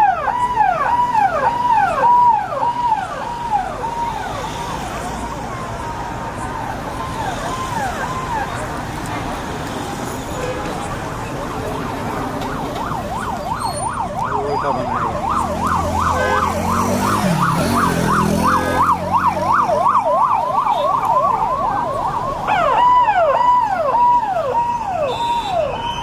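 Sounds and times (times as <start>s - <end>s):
siren wailing in fast yelp: 0.0s - 8.7s, 12.2s - 26.0s
rumble of passing vehicles: 0.0s - 26.0s
siren with slower falling sweeps: 13.1s - 20.7s.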